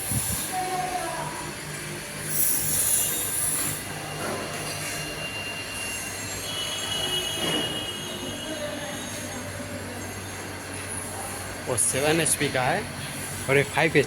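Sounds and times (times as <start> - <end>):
loud air hiss: 0.0 - 0.6
air compressor humming: 0.0 - 14.0.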